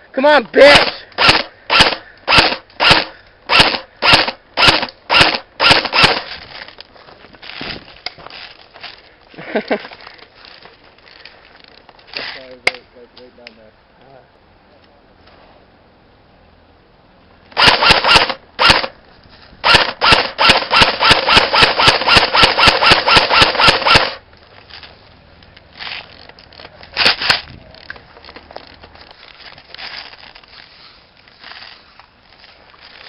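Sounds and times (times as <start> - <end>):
airsoft gun firing shots: 0.7 - 6.3, 17.6 - 18.9, 19.6 - 24.2.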